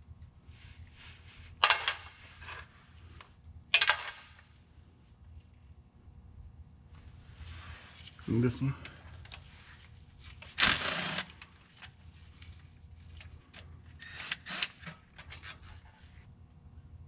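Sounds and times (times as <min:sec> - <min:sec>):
power ratchet spinning bolt: 0:10.6 - 0:11.5, 0:14.0 - 0:15.5.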